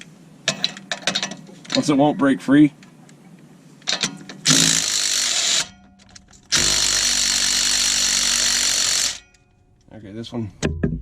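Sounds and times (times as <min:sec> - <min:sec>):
impact wrench running: 0:03.9 - 0:05.8, 0:06.5 - 0:09.4.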